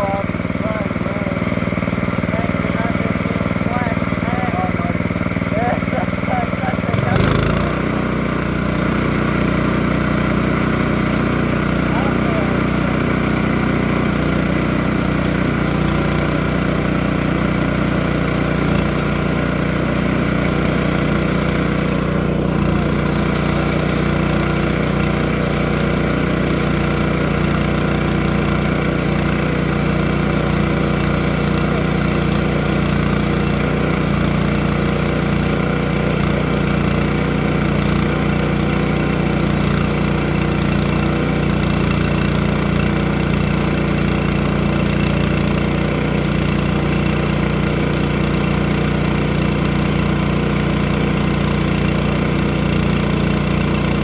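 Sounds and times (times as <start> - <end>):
engine droning steadily: 0.0 - 54.0.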